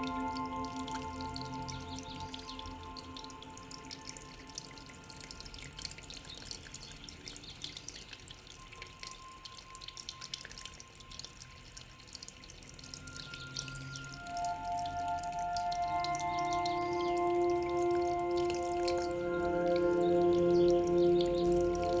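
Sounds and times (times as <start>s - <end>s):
water dripping and trickling: 0.0s - 22.0s
singing bowl hum: 13.2s - 22.0s.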